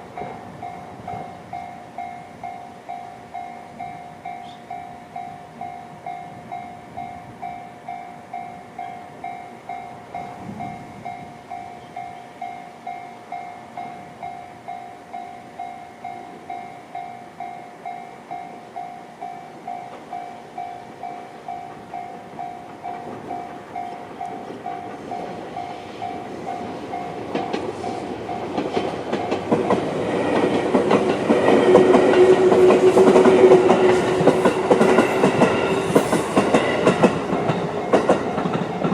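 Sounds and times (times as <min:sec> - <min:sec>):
electric train passing: 0:00.0 - 0:38.9
train wheels clickety-clack: 0:19.6 - 0:38.9.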